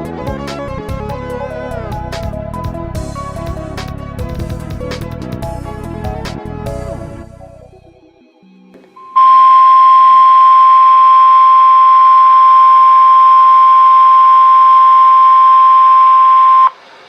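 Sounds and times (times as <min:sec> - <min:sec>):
loud steady alarm beep: 0:09.0 - 0:16.8.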